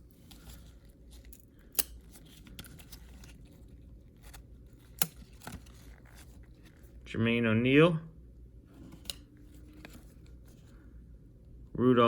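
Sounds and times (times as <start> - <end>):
cards rustling: 0.0 - 7.0, 8.8 - 10.8.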